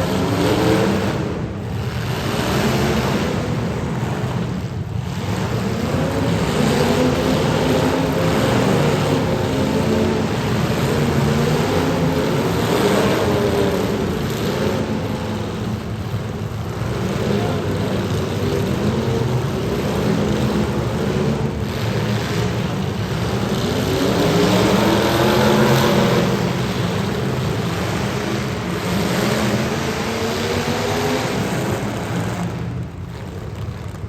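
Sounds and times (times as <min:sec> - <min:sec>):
car engines revving: 0:00.0 - 0:34.0.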